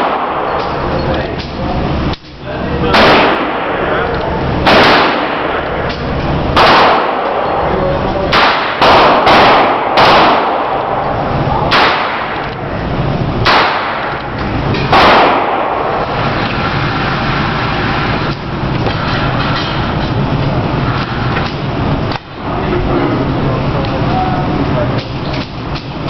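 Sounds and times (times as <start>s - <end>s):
loud gunshots: 0.0s - 0.6s, 2.8s - 4.0s, 4.6s - 7.7s, 8.3s - 12.5s, 13.4s - 14.2s, 14.9s - 16.0s.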